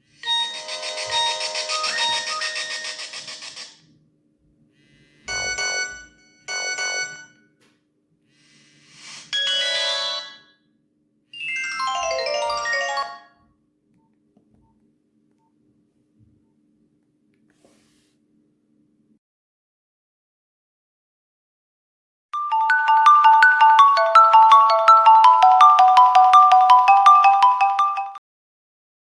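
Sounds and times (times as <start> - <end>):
mobile phone ringtones: 0.2 - 3.7, 5.3 - 7.4, 9.4 - 10.5, 22.4 - 28.2
faint steady hum: 3.9 - 9.0, 13.4 - 19.2.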